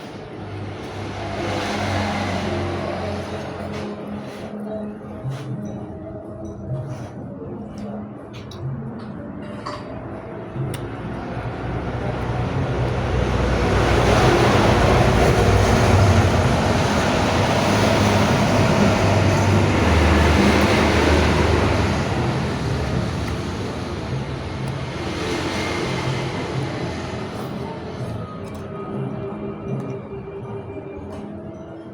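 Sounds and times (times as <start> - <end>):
vehicle rumbling past: 0.0 - 4.5, 10.5 - 28.1.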